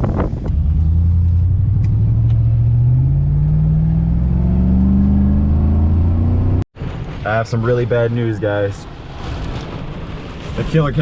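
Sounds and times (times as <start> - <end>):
pickup truck engine accelerating: 0.3 - 6.6.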